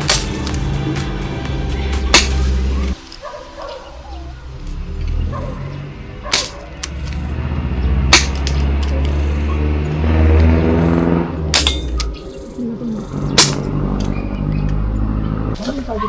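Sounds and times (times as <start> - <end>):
gunshots snapping: 0.0 - 1.1, 2.1 - 3.0, 6.3 - 7.3, 8.1 - 9.2, 13.4 - 14.2.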